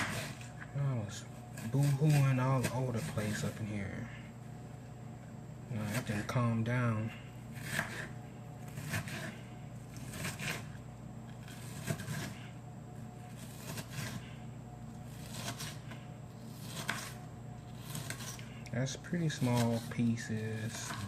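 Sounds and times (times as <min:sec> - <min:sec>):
knife cutting onion on board: 0:00.0 - 0:00.7, 0:01.4 - 0:03.7, 0:05.8 - 0:12.6, 0:13.3 - 0:14.4, 0:15.1 - 0:18.6, 0:19.2 - 0:21.0
steady low hum: 0:00.0 - 0:21.0.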